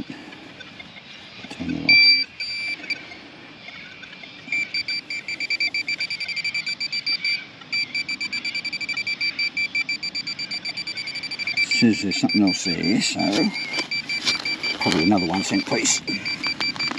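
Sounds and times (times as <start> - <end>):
metal detector rapid beeping: 1.9 - 3.0, 4.5 - 16.9.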